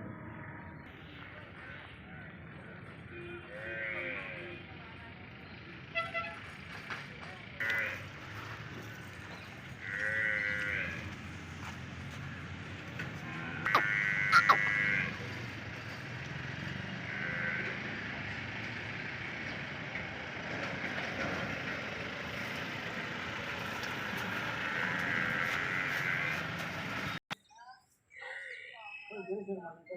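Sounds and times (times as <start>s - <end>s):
animal bleating: 3.4s - 4.6s, 7.6s - 8.0s, 9.8s - 11.1s, 13.2s - 15.3s, 17.1s - 17.8s, 24.6s - 26.4s.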